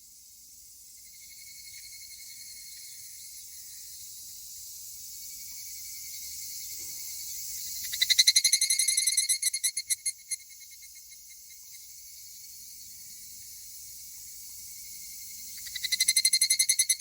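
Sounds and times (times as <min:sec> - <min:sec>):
faint high insect hiss: 0:00.0 - 0:17.0
cicadas calling: 0:05.1 - 0:11.8, 0:14.1 - 0:17.0.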